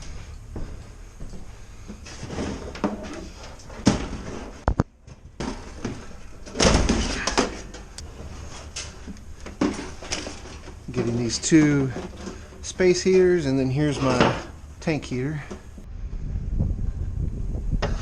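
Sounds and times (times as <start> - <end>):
door sliding and banging: 5.4 - 8.9, 13.9 - 14.6.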